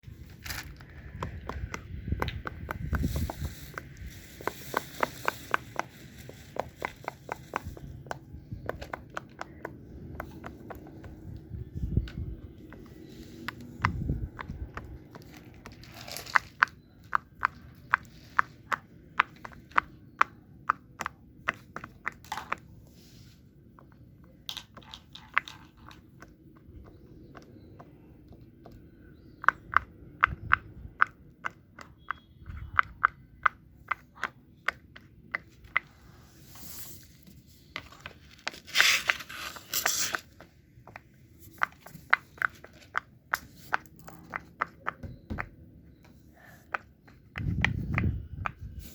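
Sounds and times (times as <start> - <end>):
scratchy rustle: 38.4 - 40.3.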